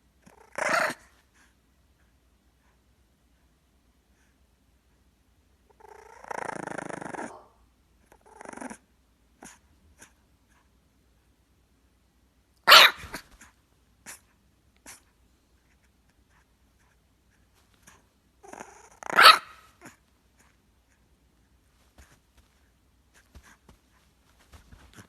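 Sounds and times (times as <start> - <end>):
puppy barking: 12.6 - 13.2, 19.0 - 19.7.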